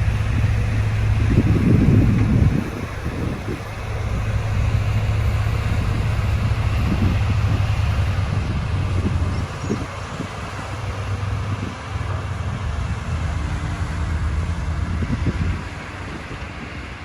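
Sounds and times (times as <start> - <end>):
diesel engine humming: 0.0 - 17.0.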